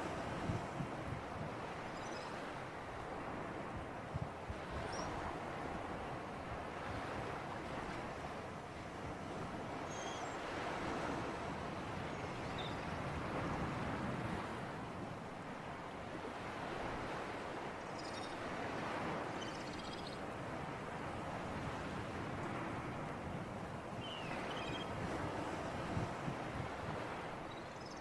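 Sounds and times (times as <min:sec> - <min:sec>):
sea waves washing: 0:20.2 - 0:27.5.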